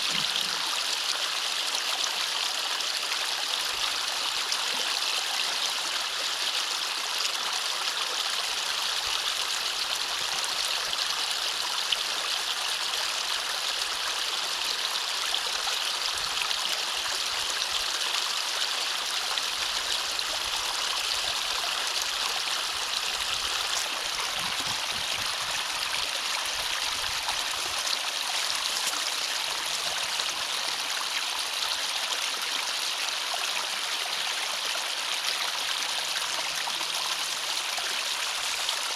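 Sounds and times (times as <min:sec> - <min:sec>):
water rushing through ditch: 0:00.0 - 0:05.1, 0:16.8 - 0:38.9.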